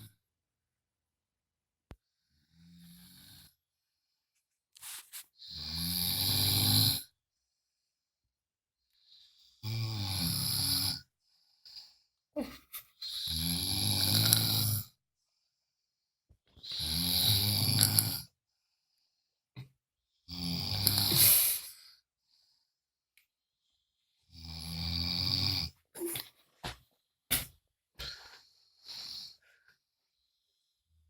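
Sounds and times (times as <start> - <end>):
person snoring: 2.4 - 3.6, 5.4 - 7.1, 9.6 - 11.1, 13.0 - 15.0, 16.6 - 18.3, 20.3 - 21.9, 24.3 - 26.2.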